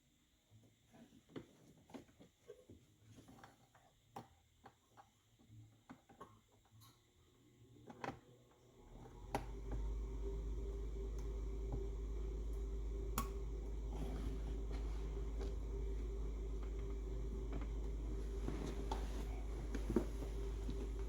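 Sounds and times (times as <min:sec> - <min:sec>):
steady low hum: 0:08.9 - 0:21.0.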